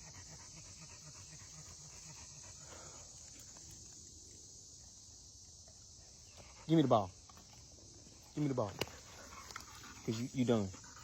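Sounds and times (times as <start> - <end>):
dog panting: 0.0 - 3.5, 8.8 - 11.0
insects droning: 0.0 - 11.0.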